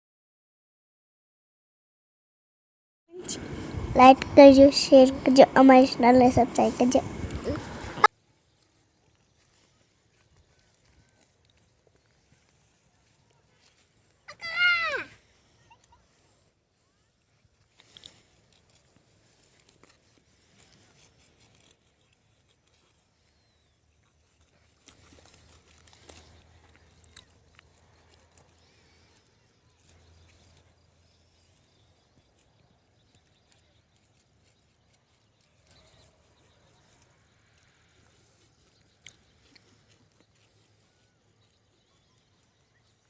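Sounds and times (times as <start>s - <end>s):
faint clicks and rustles: 17.2s - 43.0s.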